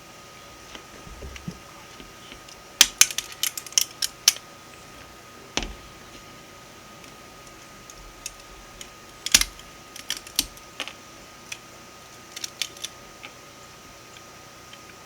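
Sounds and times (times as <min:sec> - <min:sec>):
plastic supports snapping: 0:01.0 - 0:01.6.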